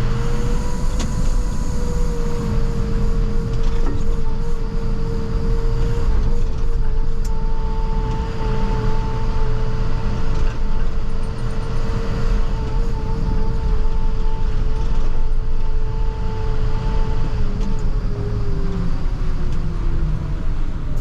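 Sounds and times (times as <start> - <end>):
constant whine: 0.0 - 21.0
higher whine: 0.0 - 21.0
truck engine rumble: 0.0 - 21.0.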